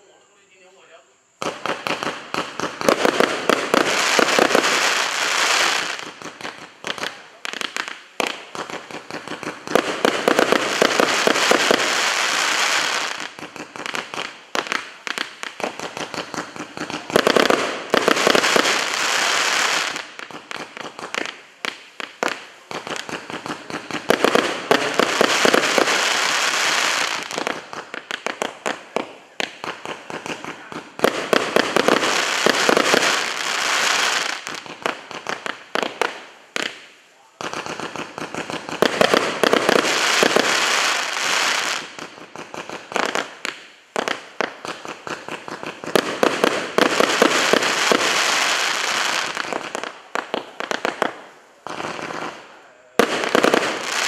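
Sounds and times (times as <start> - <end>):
fireworks popping and crackling: 1.4 - 54.0.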